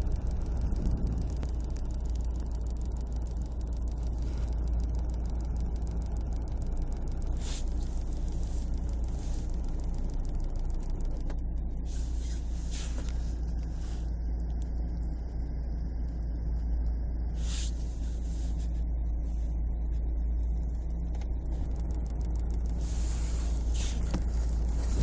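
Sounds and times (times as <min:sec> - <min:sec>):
thin steady tone: 0:00.0 - 0:24.2
car low rumble: 0:00.0 - 0:25.0
rapid ticking from car fan: 0:00.0 - 0:25.0
short hissy bursts: 0:11.9 - 0:13.3, 0:22.8 - 0:24.1.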